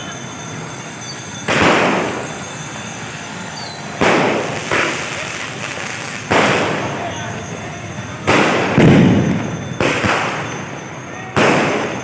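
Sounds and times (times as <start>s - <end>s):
steady background hiss: 0.0s - 12.0s
firecracker bangs: 1.4s - 3.0s, 4.0s - 12.0s.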